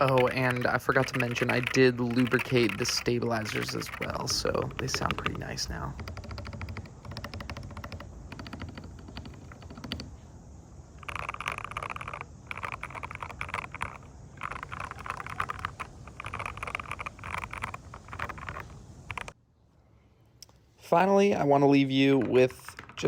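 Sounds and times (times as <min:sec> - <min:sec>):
mechanical keyboard typing: 0:00.0 - 0:10.1, 0:11.0 - 0:19.3.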